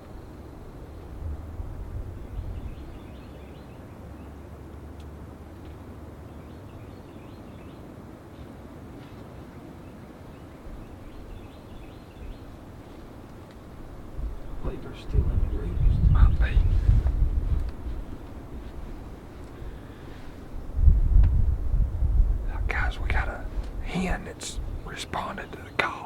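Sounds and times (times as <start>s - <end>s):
wind buffeting microphone: 0.0s - 3.8s, 10.6s - 25.9s
distant bird chirps: 2.1s - 4.6s, 9.8s - 16.7s, 22.6s - 26.0s.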